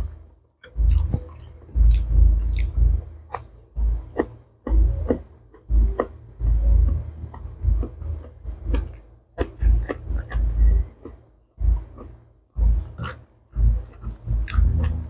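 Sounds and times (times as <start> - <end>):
person chewing food: 0.0 - 15.0
wet mouth clicks: 0.6 - 3.5, 7.3 - 11.2
low thud of bites: 0.7 - 15.0.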